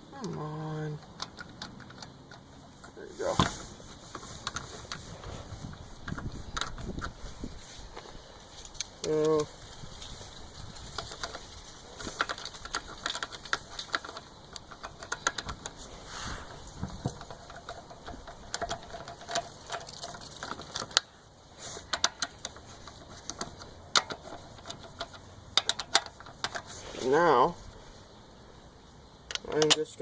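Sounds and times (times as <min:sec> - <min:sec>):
lug nuts clinking: 0:01.0 - 0:05.1, 0:10.8 - 0:15.9, 0:16.5 - 0:26.8, 0:29.3 - 0:30.0.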